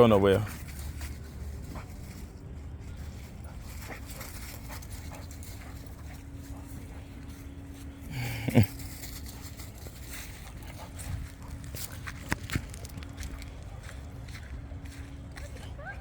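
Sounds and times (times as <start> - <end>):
dog panting: 2.9 - 12.3.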